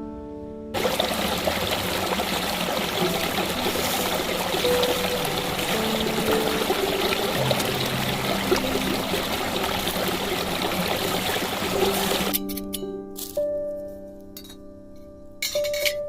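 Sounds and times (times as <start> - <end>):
stream trickling: 0.8 - 12.4.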